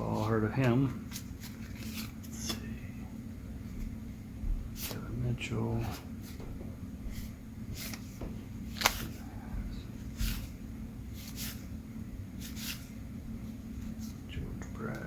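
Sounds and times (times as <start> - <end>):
low hum: 0.0 - 15.0
cards flipped papery swishes: 1.1 - 2.6, 7.2 - 9.2, 10.2 - 10.5, 11.2 - 11.7, 12.4 - 12.9
card snap: 8.7 - 9.1.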